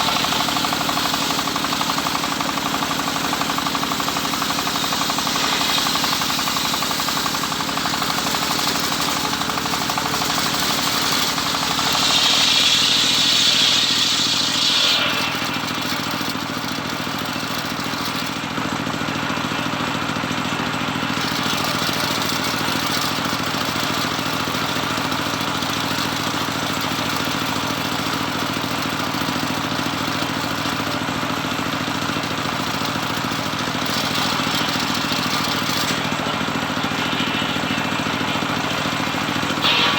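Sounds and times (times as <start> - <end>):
saw motor humming: 0.0 - 20.1, 28.5 - 39.9
circular saw cutting wood: 0.0 - 39.9.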